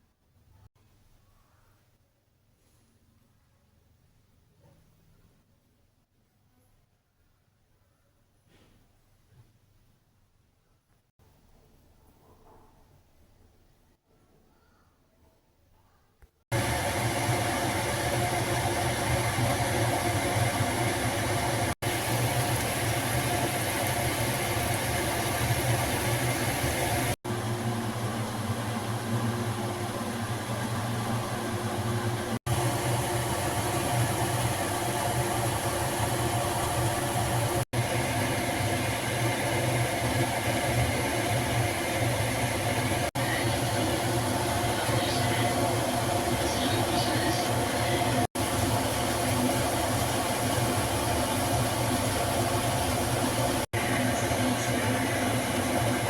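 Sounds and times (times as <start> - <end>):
motor humming with hiss: 16.5 - 27.2, 28.8 - 56.0.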